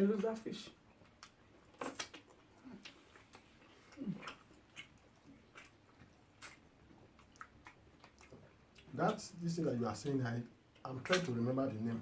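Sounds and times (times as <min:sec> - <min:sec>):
chewing mouth smacks: 0:00.9 - 0:09.2.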